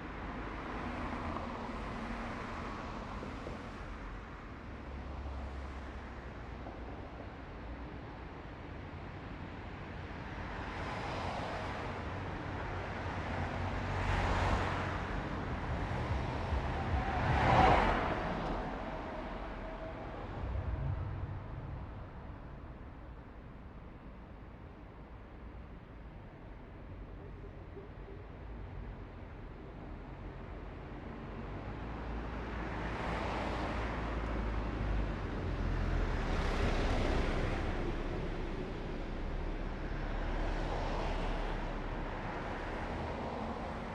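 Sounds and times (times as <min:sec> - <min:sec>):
traffic rumble: 0:00.0 - 0:43.9
vehicles swishing past: 0:13.0 - 0:23.8, 0:31.5 - 0:43.9.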